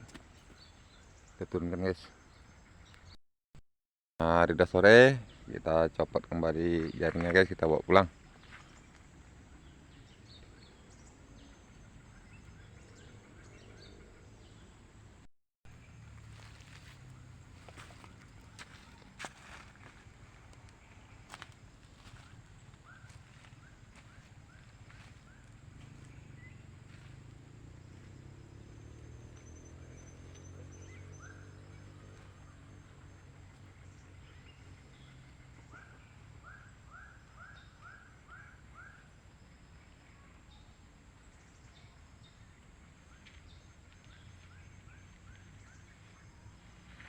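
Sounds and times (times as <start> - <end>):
faint outdoor ambience: 0.0 - 3.2, 4.2 - 47.0
faint bird chirps: 15.8 - 47.0.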